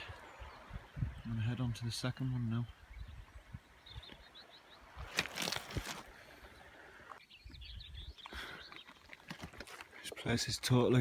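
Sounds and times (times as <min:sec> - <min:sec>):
small birds chirping: 0:00.0 - 0:11.0
rustling noise: 0:05.0 - 0:06.1.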